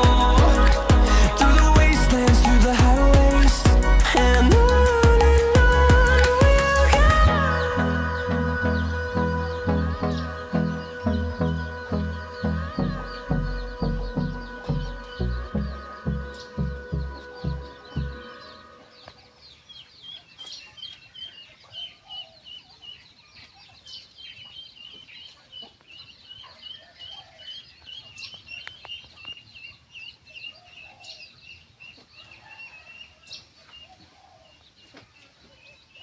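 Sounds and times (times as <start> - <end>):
music with a beat: 0.0 - 18.2
birds chirping: 0.0 - 36.0
lower bird calls: 0.0 - 36.0.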